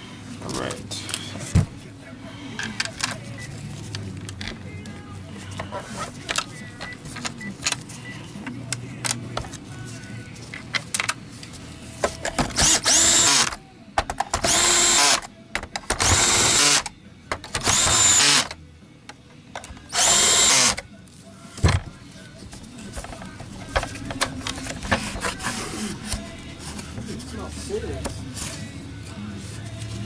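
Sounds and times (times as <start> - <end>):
cordless drill motor whine: 12.6 - 13.5, 14.5 - 15.2, 16.0 - 16.8, 17.6 - 18.5, 19.9 - 20.8.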